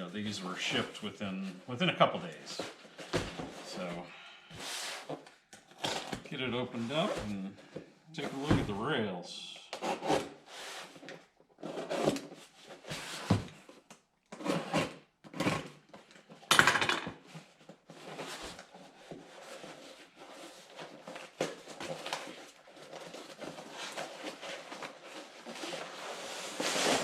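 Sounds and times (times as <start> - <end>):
cardboard box tearing and scraping: 14.3 - 15.7, 22.9 - 27.0.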